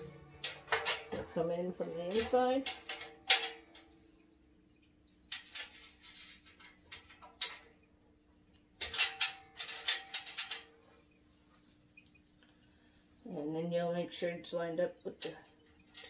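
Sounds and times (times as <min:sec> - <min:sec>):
faint steady hum: 0:00.0 - 0:16.0
plastic parts clicking and knocking: 0:08.8 - 0:10.7.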